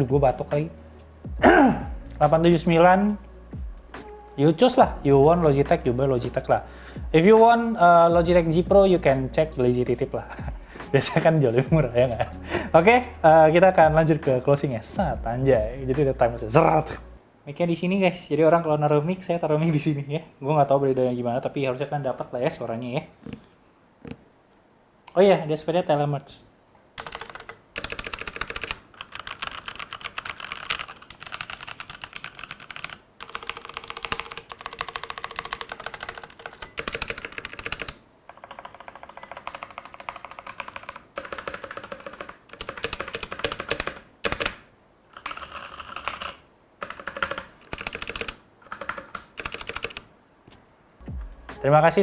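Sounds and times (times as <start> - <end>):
mechanical keyboard typing: 27.0 - 50.1.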